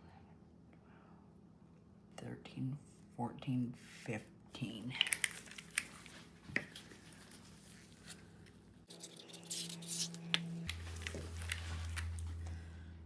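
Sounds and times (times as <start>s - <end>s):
steady low hum: 6.3s - 13.0s.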